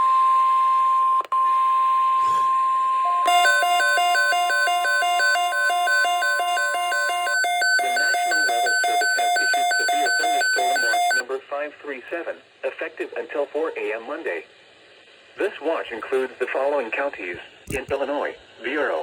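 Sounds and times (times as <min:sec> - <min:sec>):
steady electronic warning tone: 0:02.2 - 0:11.2
fast repeating electronic beeps: 0:04.6 - 0:11.2.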